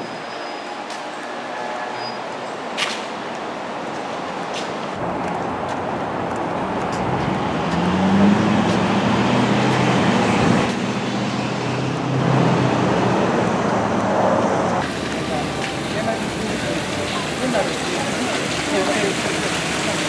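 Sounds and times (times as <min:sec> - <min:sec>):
tyre and road noise: 0:00.0 - 0:20.0
vehicle engine humming: 0:05.0 - 0:20.0.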